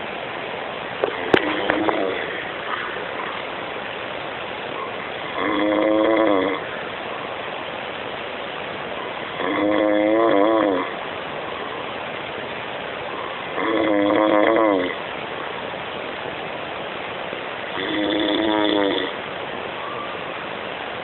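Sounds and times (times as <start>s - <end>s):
steady hiss: 0.0s - 21.0s
loud snoring: 1.4s - 2.3s, 5.4s - 6.7s, 9.4s - 10.9s, 13.6s - 15.0s, 17.8s - 19.2s.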